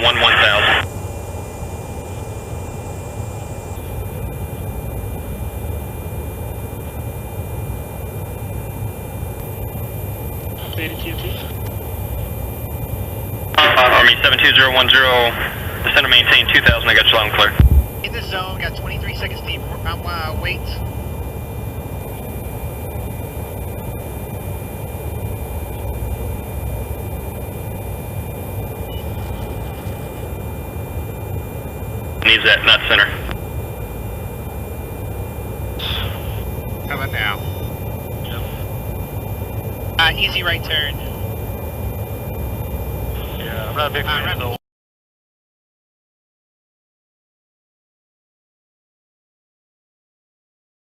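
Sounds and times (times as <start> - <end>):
aircraft engine drone in cockpit: 0.0 - 44.6
faint high whine: 0.0 - 44.6
faint steady high tone: 35.8 - 38.7.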